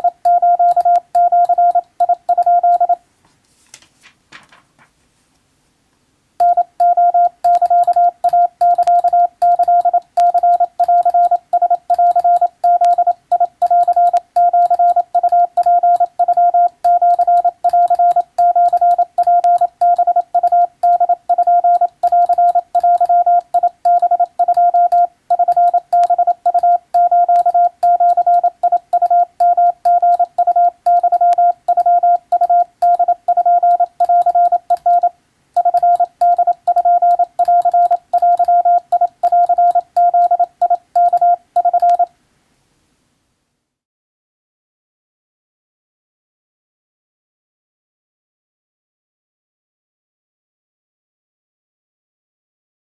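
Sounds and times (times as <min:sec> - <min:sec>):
morse code beeping: 0:00.0 - 0:03.0, 0:06.4 - 0:42.1.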